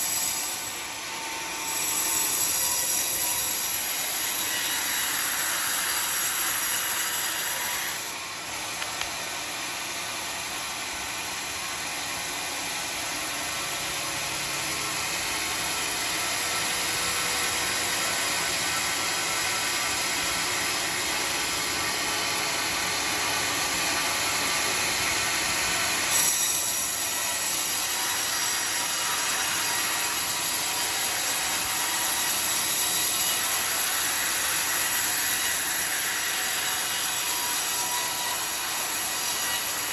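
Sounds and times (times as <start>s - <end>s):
saw blade cutting log: 0.0s - 8.2s, 22.8s - 39.9s.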